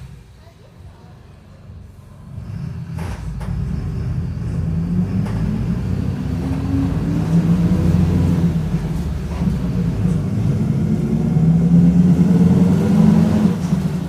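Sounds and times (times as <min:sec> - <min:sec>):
bus engine accelerating: 0:00.0 - 0:14.0.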